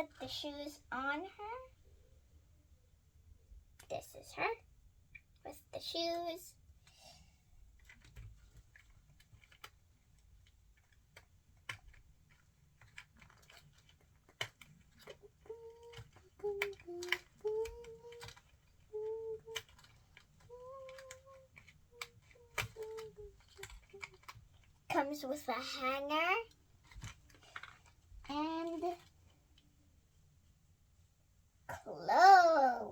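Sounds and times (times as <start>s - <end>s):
packaging being handled: 7.8s - 24.9s
plastic toy pieces clicking: 7.8s - 29.3s
child humming: 15.4s - 19.6s, 20.4s - 24.1s.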